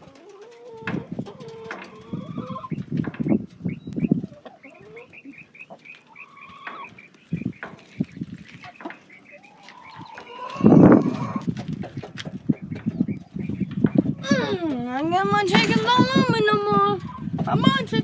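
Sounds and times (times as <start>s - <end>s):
chickens clucking: 0.0s - 18.0s
short high chicken calls: 9.4s - 11.5s.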